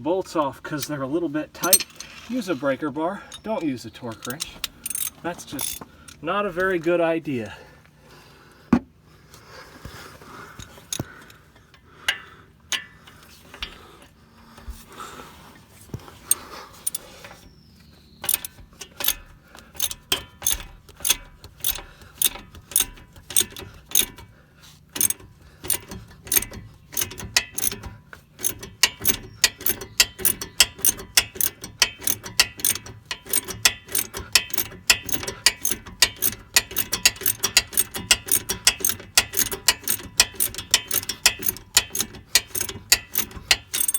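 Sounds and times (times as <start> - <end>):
socket ratchet clicking: 4.1 - 5.9, 16.3 - 17.1, 18.2 - 24.3, 24.9 - 43.9.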